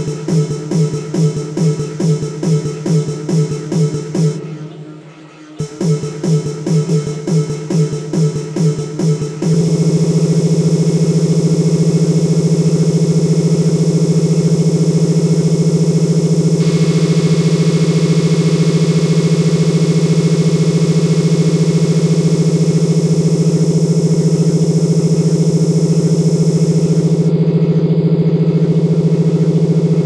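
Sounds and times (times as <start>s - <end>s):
loud low electronic buzz: 0.0s - 4.4s, 5.6s - 30.0s
quick electronic pulsing: 5.6s - 27.3s.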